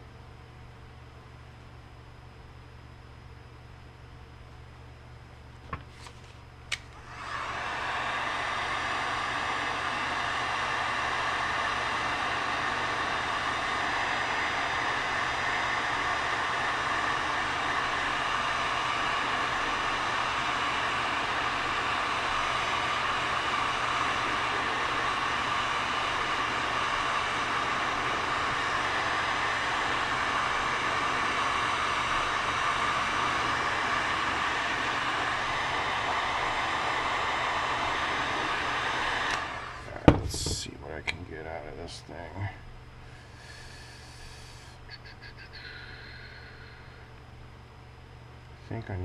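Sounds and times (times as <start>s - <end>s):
heat gun blowing: 6.7s - 40.7s, 43.0s - 47.1s.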